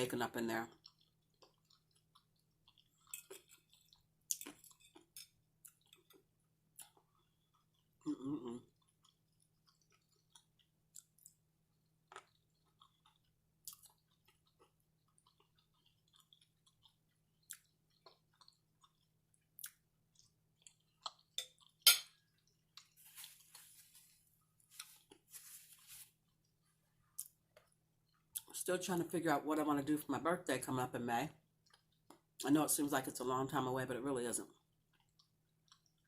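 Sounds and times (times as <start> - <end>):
close-miked chewing: 0.6 - 23.4, 31.6 - 32.3, 34.5 - 36.0.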